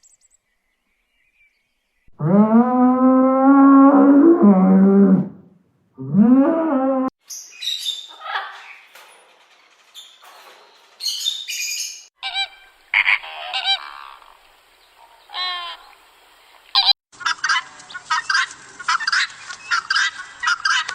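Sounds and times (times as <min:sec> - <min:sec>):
poultry honking and squawking: 0:12.2 - 0:14.3, 0:15.2 - 0:15.9, 0:16.8 - 0:20.9.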